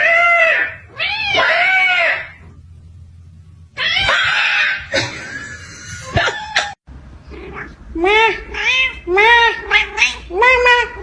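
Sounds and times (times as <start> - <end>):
cat screeching yowl: 0.0 - 2.4, 3.8 - 4.9.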